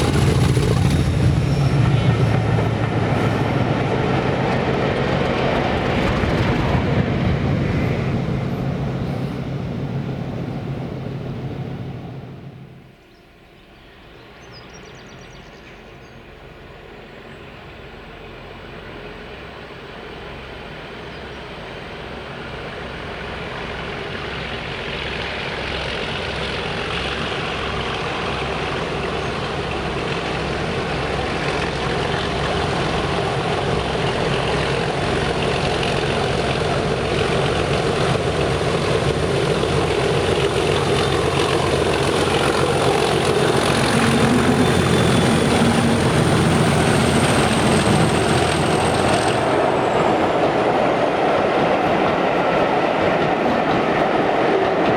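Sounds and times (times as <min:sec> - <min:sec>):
diesel locomotive engine working: 0:00.0 - 0:54.9.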